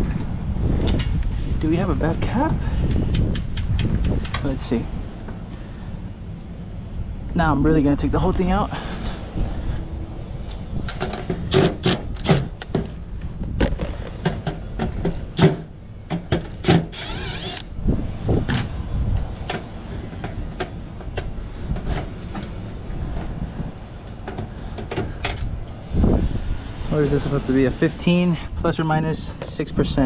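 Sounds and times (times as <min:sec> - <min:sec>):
low background rumble: 0:00.0 - 0:30.0
tools and metal parts clicking: 0:16.4 - 0:17.7.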